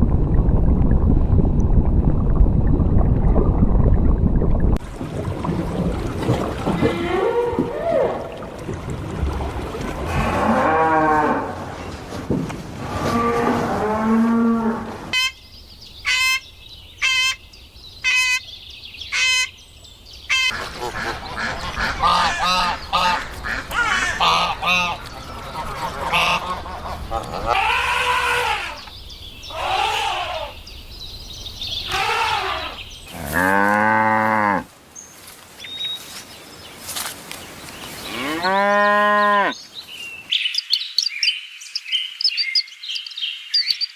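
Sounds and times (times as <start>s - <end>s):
cattle mooing: 10.1s - 11.7s.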